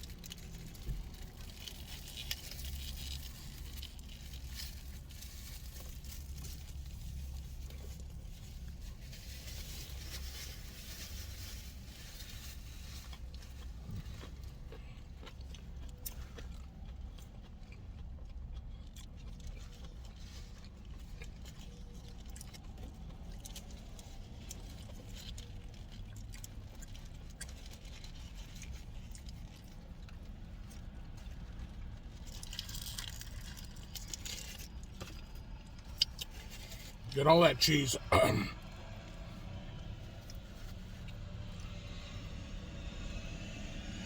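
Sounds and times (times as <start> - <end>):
chewing: 0.0 - 37.0
food handling clicks and crackles: 0.0 - 37.0.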